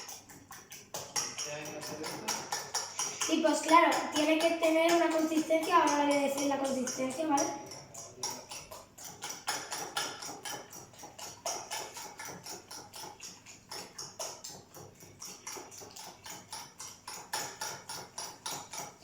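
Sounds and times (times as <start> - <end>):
fork beating eggs in a plate: 0.0 - 19.0.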